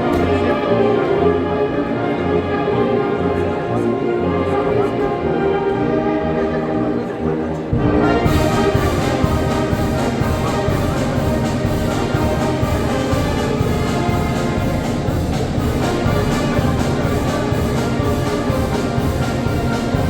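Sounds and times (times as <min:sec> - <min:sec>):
brass band playing: 0:00.0 - 0:20.0
percussion beat: 0:07.8 - 0:20.0.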